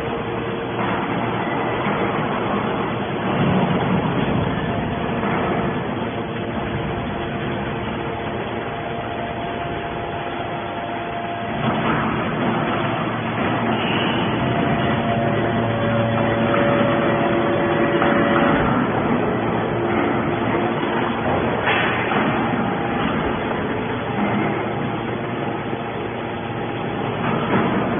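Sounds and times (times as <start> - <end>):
hydraulic baler running: 0.0 - 27.9.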